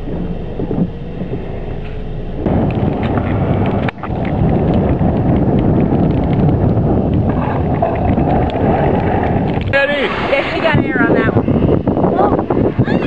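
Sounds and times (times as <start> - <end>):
wind rumbling on microphone: 0.0 - 13.0.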